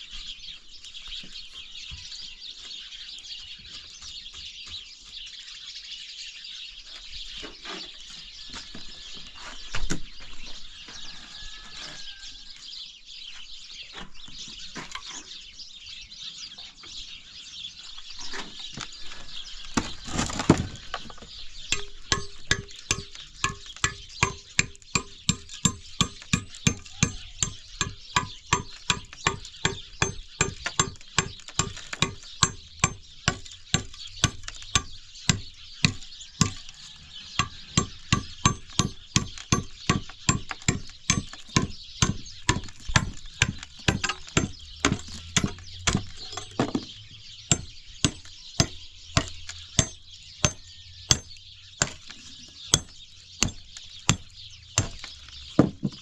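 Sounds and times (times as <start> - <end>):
birds chirping: 0.0 - 56.0
scattered knocks: 21.7 - 36.6, 37.4 - 46.9, 52.8 - 56.0
regular ringing knocking: 37.4 - 46.9.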